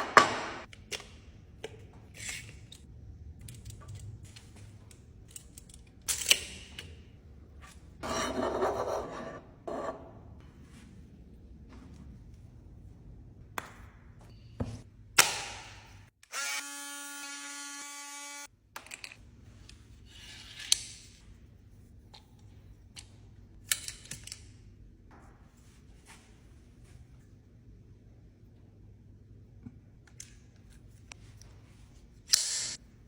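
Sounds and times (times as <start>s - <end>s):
small electric motor buzzing: 16.3s - 18.5s.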